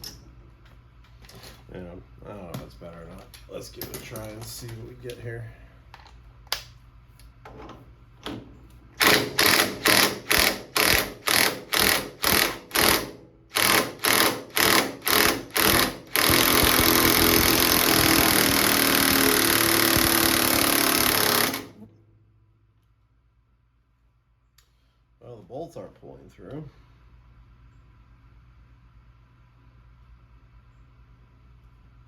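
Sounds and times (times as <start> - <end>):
impact wrench hammering: 9.0 - 21.8.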